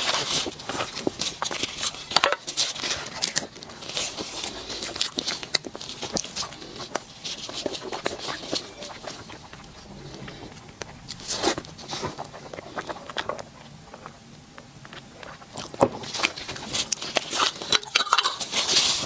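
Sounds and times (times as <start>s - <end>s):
biting and chewing clicks: 0.4s - 19.0s.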